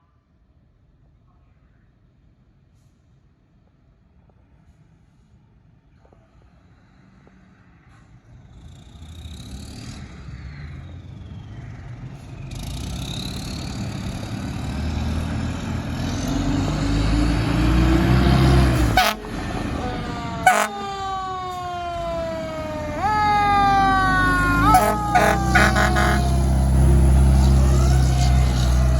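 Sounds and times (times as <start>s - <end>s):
fire engine engine: 7.9s - 28.9s
air horn blasts: 18.8s - 21.2s, 23.0s - 27.0s.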